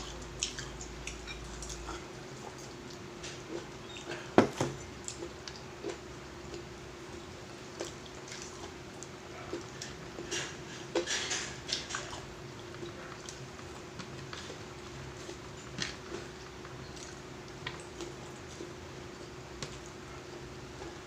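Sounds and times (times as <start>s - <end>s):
chewing: 0.0s - 4.3s, 4.9s - 6.7s, 7.7s - 20.0s
faint steady hum: 0.0s - 21.0s.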